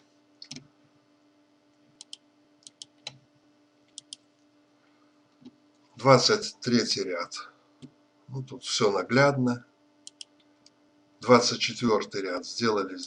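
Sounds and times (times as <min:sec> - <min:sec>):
faint electrical hum: 0:00.0 - 0:13.0
computer mouse clicking: 0:00.4 - 0:00.7, 0:02.0 - 0:03.2, 0:03.9 - 0:04.3, 0:10.0 - 0:10.8.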